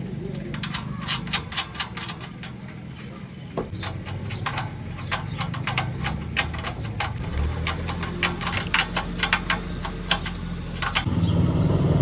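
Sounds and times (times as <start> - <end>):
motorcycle engine running: 0.0 - 12.0
sharp irregular ticks: 3.7 - 11.1.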